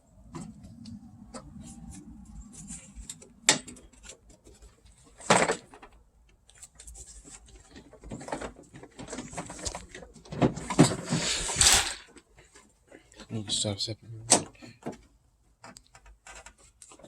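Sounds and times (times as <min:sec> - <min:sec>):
plastic clicking and scraping: 0:00.2 - 0:13.6, 0:14.2 - 0:17.0.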